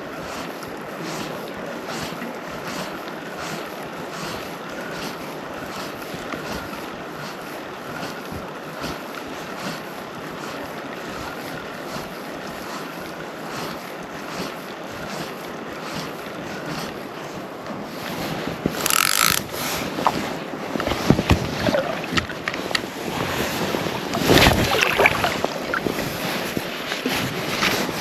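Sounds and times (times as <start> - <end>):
soft regular stroke: 0.0 - 28.0
wind on microphone: 17.8 - 28.0
water rushing: 18.8 - 28.0.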